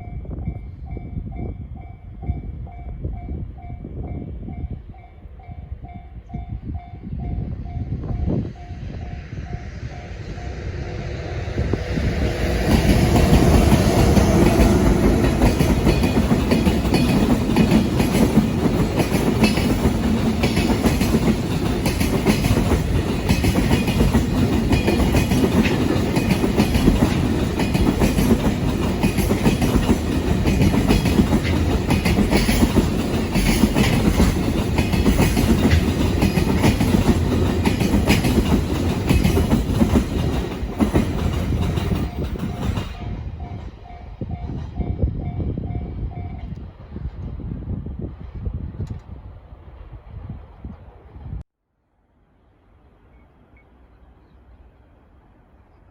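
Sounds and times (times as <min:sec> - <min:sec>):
train rumbling past: 0:00.0 - 0:51.5
wheels clattering over rail joints: 0:12.7 - 0:43.1.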